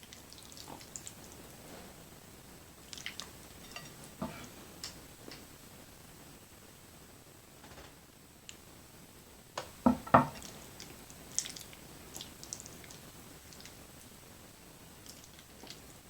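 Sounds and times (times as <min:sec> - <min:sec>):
wet chewing: 0:00.0 - 0:01.6, 0:02.8 - 0:04.0, 0:10.4 - 0:13.8, 0:15.0 - 0:15.9.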